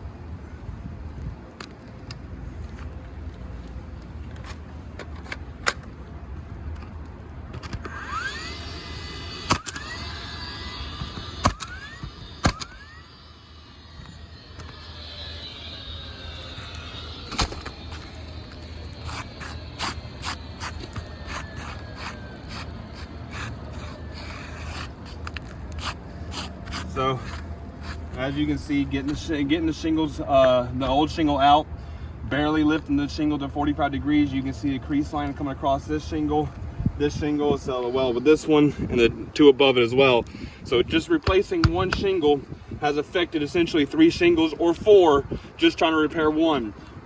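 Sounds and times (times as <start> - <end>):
roof shingle scraping: 16.3 - 28.4.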